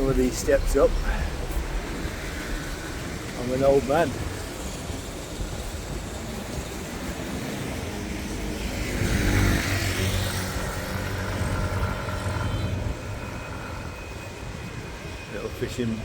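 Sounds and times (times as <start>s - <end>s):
motor vehicle passing: 8.0s - 13.7s.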